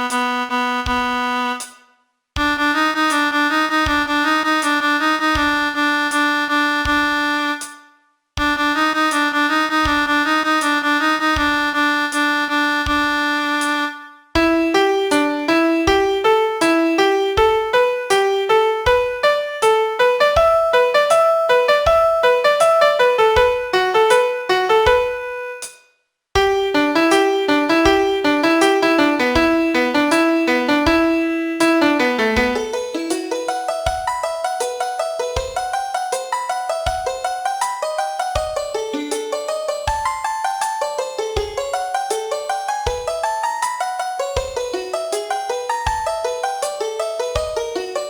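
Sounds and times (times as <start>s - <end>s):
digital piano melody: 14.4s - 25.8s, 26.4s - 48.0s.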